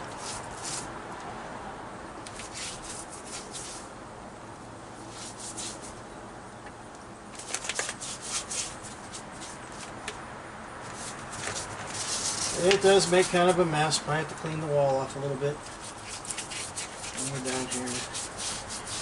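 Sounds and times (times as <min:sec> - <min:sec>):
adhesive rustling and spattering: 0:07.3 - 0:10.0.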